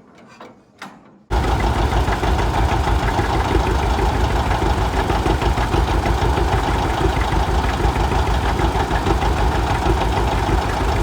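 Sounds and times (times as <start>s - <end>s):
diesel tractor engine running: 1.3s - 11.0s.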